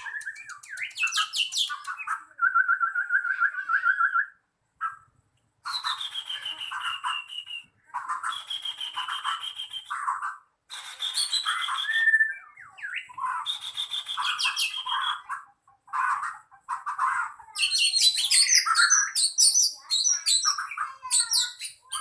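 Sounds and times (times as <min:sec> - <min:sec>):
songbird singing whistled phrases: 0:00.0 - 0:04.4, 0:05.6 - 0:15.3, 0:17.6 - 0:22.0.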